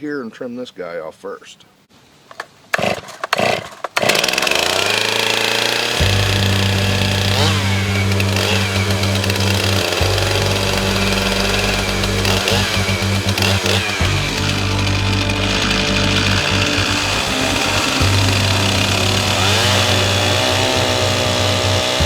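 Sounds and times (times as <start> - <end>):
chainsaw ripping along a log: 2.4 - 22.0
background music with bass notes: 5.9 - 22.0.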